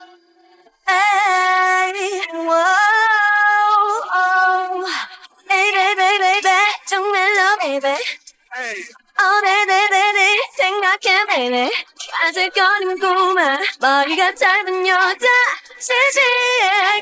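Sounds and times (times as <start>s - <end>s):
woman singing with vibrato: 0.9s - 8.2s, 9.1s - 17.0s.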